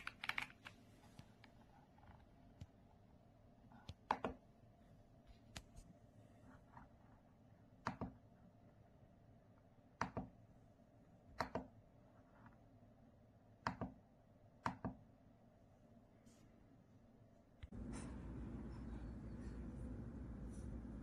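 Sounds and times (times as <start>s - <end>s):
mechanical keyboard keystrokes: 0.0s - 0.7s.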